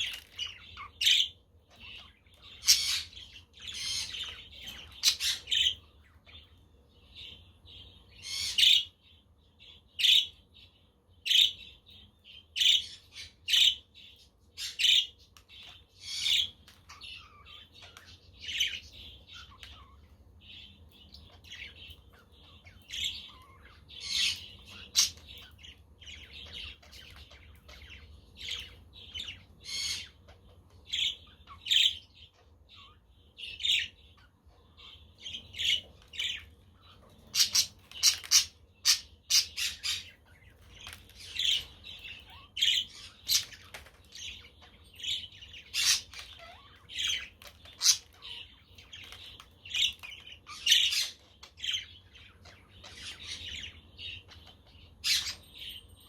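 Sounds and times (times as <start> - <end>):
budgerigars chirping: 0.0 - 55.5.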